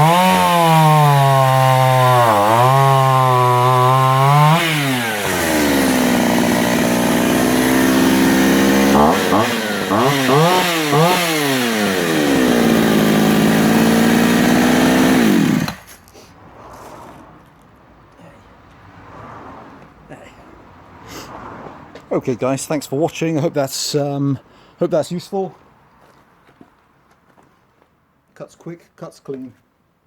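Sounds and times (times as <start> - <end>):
chainsaw revving and idling: 0.0 - 15.9.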